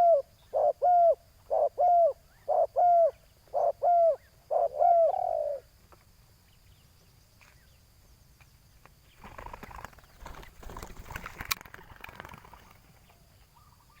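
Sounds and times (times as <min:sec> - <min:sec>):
faint bird chirps: 0:00.0 - 0:05.8, 0:11.8 - 0:14.0.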